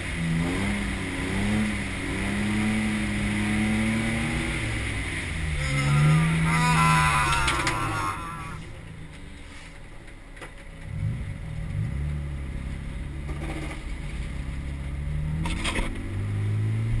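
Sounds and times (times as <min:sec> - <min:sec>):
car engine revving: 0:00.0 - 0:08.9.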